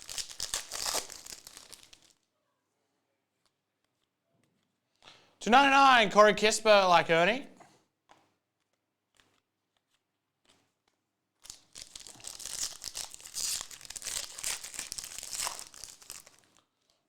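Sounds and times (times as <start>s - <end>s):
card pack wrapper tearing and crinkling: 0.0s - 2.2s, 11.5s - 16.4s.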